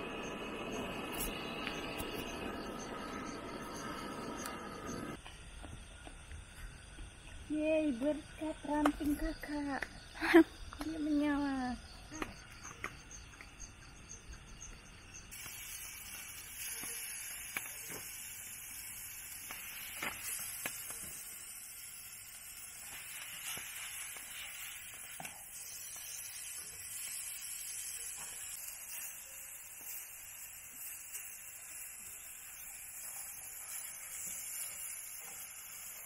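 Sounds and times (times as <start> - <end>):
food sizzling: 0.0 - 5.2, 15.3 - 36.0
pops and crackles: 15.3 - 31.7.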